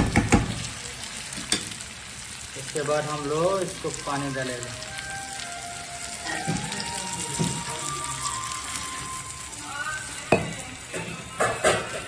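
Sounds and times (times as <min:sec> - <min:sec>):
water hissing in hot pan: 0:00.0 - 0:12.0
background music: 0:04.1 - 0:10.3.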